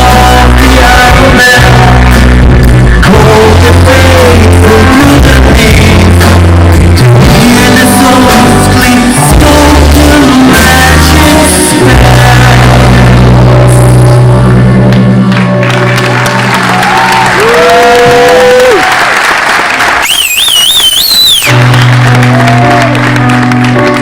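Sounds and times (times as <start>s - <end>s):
person singing: 0.0s - 15.9s
rock band playing live: 0.0s - 18.6s, 21.2s - 24.0s.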